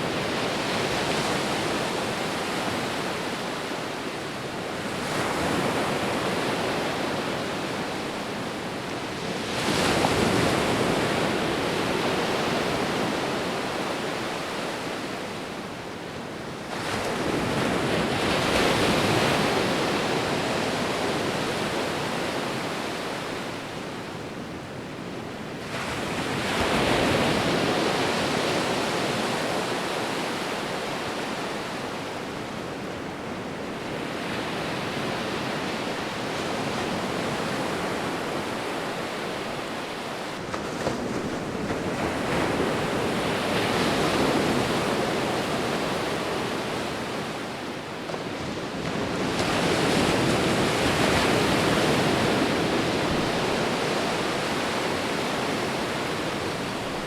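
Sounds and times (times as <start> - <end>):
sea waves breaking on shore: 0.0 - 57.0.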